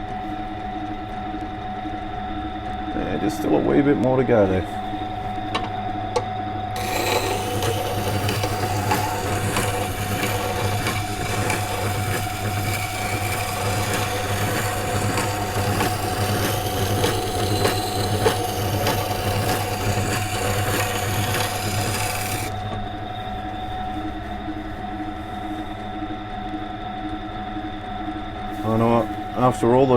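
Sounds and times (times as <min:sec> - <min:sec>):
steel scraping on wet stone: 0:06.8 - 0:22.6
grinder motor hum: 0:06.8 - 0:23.4.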